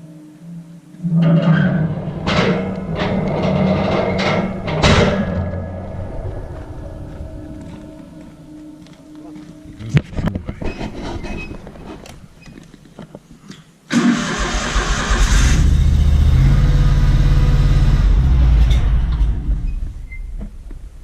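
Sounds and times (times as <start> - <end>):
vehicle engine starting and running: 13.9 - 20.1.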